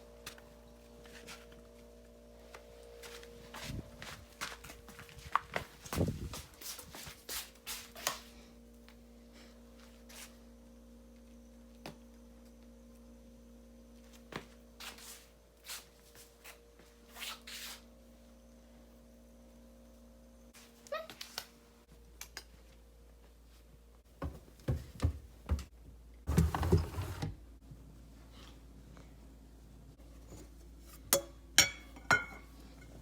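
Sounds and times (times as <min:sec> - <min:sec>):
faint steady hum: 0:07.5 - 0:17.1, 0:17.8 - 0:20.8.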